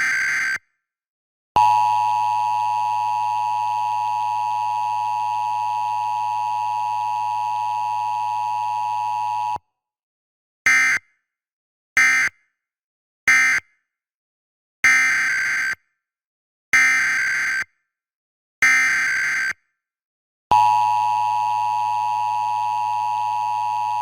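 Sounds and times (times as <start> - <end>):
two-tone attention signal: 20.6 - 24.0.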